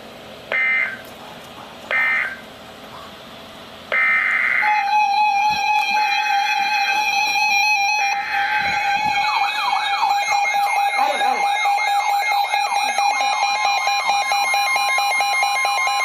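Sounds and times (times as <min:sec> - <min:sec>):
steady electronic alert tone: 0:01.9 - 0:02.4, 0:04.0 - 0:16.0
screeching digital data bursts: 0:04.0 - 0:16.0.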